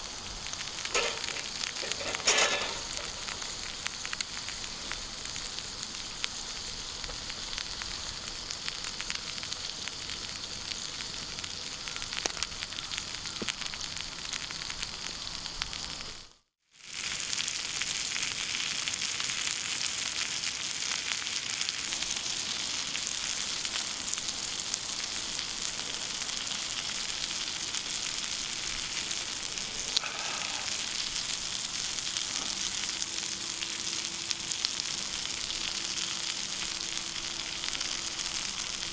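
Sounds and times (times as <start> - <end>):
food sizzling in a skillet: 0.0 - 38.9.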